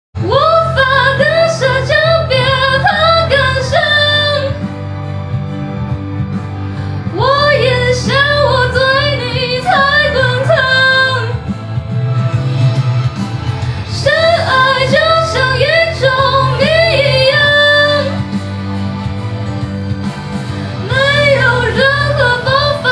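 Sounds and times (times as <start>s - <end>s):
woman singing pop song: 0.2s - 5.0s, 7.0s - 11.8s, 13.7s - 18.8s, 20.7s - 22.9s
backing track music: 0.2s - 22.9s.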